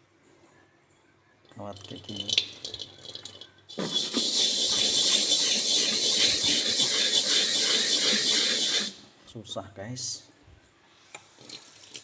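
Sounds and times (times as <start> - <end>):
wire scourer scrubbing a pan: 3.7 - 9.0.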